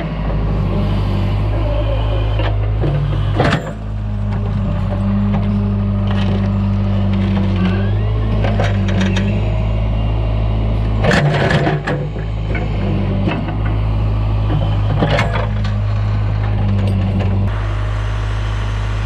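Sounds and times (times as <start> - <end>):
backhoe engine running: 0.0 - 19.0.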